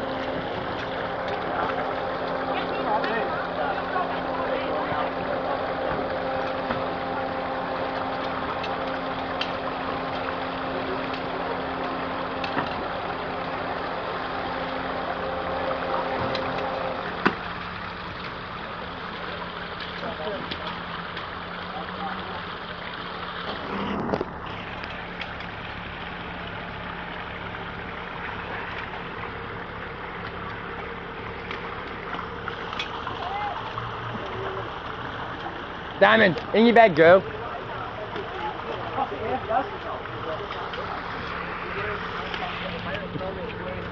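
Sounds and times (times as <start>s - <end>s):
constant hiss: 0.0s - 43.9s
engine idling: 0.0s - 43.9s
motor humming: 0.0s - 43.9s.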